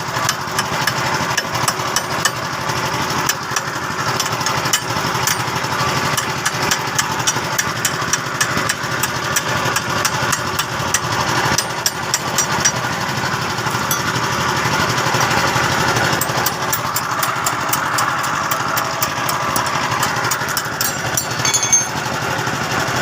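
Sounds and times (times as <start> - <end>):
engine running: 0.0 - 23.0.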